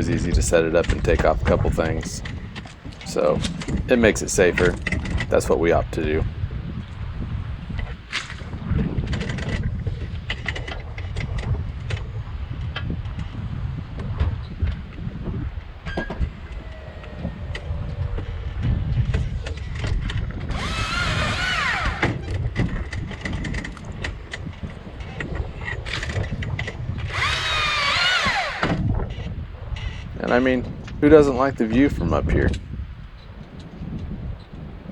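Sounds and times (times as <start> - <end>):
wind rumble on microphone: 0.0 - 34.9
electric chainsaw cutting branch: 16.2 - 23.4, 27.0 - 28.9.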